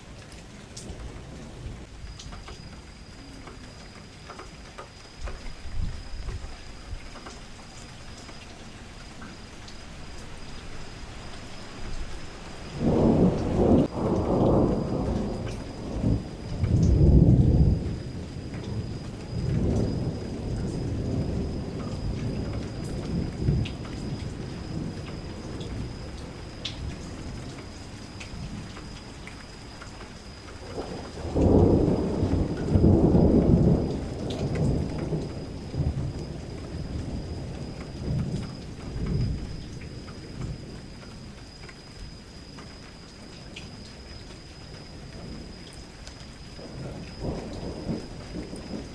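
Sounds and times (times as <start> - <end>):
steady rain: 0.0 - 48.9
rolling thunder: 12.6 - 29.2, 30.6 - 41.0, 46.4 - 48.9.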